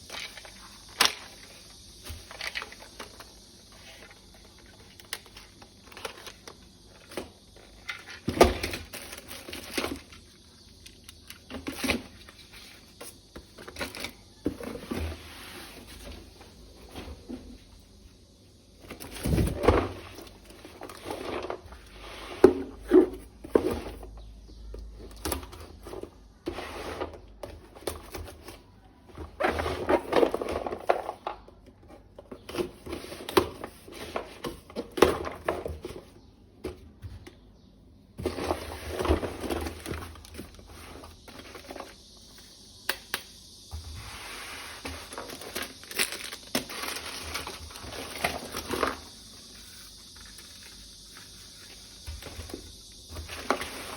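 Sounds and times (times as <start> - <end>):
packaging crinkling and rustling: 44.8 - 53.9.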